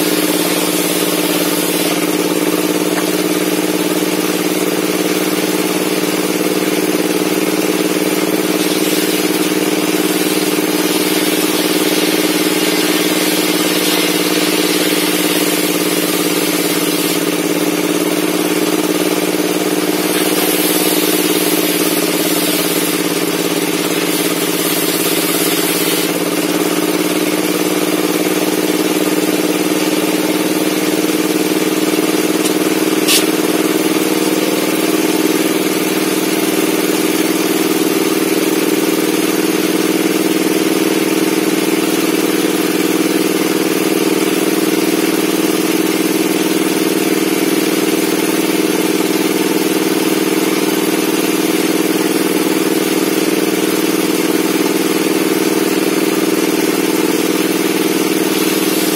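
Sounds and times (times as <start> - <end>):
table saw humming: 0.0 - 26.3, 30.3 - 37.2, 57.6 - 58.9.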